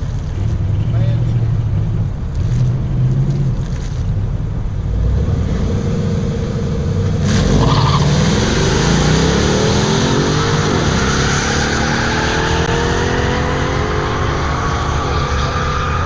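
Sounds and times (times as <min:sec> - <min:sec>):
car engine speeding up: 0:04.8 - 0:16.0.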